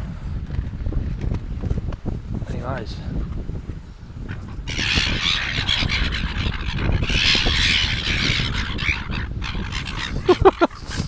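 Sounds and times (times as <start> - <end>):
seagulls squawking and squealing: 4.4 - 11.0.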